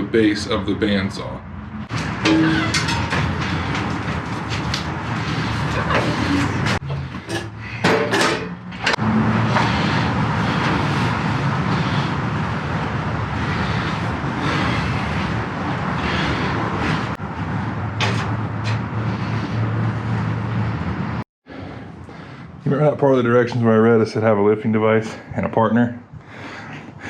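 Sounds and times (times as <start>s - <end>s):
heavy machine knocks and clunks: 1.9s - 4.6s.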